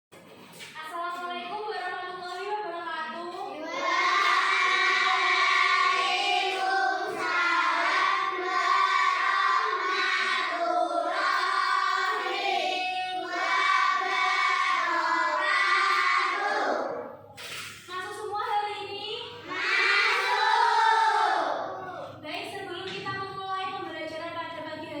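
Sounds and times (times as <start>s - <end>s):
children singing together: 3.6s - 17.3s, 19.4s - 22.1s.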